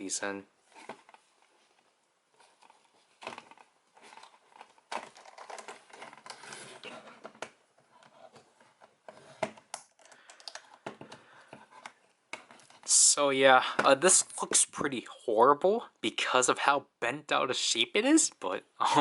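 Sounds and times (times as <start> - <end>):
straps rustling: 0.6 - 9.4.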